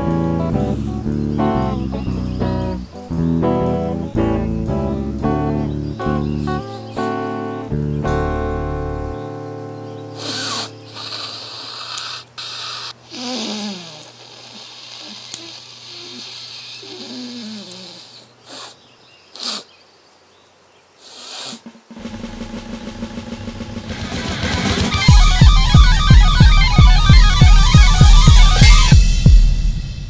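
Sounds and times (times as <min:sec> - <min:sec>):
music: 0:00.0 - 0:11.1, 0:21.6 - 0:30.0
cartoon elephant snorting: 0:10.2 - 0:19.7, 0:21.0 - 0:22.4
squeaky vocal sounds: 0:10.2 - 0:19.7, 0:21.0 - 0:21.6.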